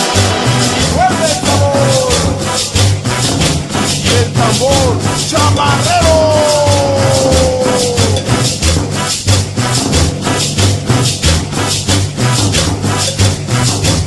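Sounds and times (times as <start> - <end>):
bass line: 0.0 - 14.0
shaker beat: 0.0 - 14.0.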